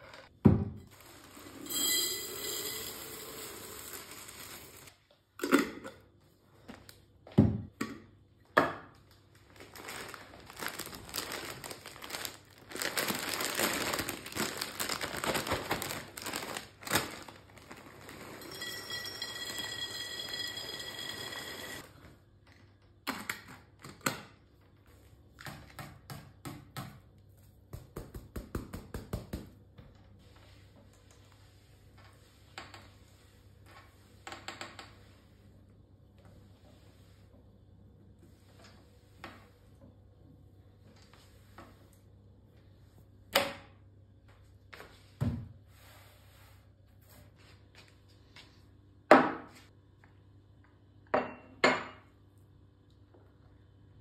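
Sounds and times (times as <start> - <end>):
clear ringing tone: 1.7 - 3.2, 18.4 - 21.8
plastic packaging crinkling: 9.1 - 18.5.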